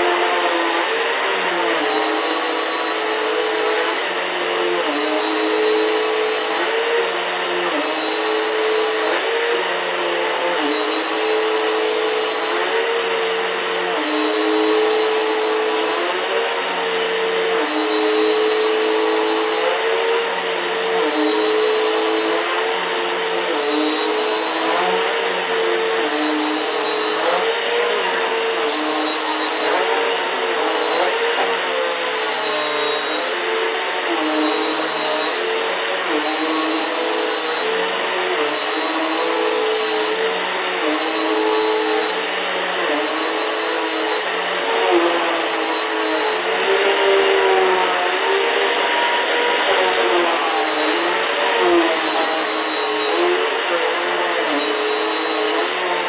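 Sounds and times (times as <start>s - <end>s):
vacuum cleaner motor whine: 0.0s - 56.0s.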